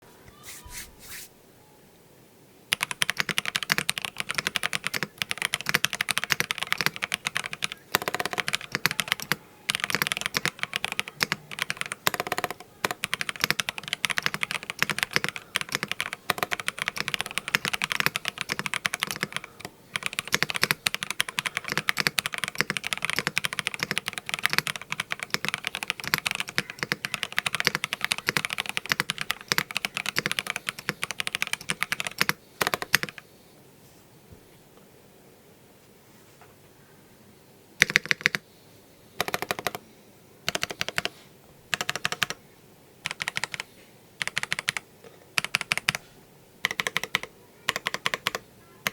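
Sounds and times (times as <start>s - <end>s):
mechanical keyboard typing: 2.7s - 33.2s, 37.8s - 38.4s, 39.2s - 39.8s, 40.5s - 42.4s, 43.0s - 44.8s, 45.4s - 46.0s, 46.6s - 48.9s.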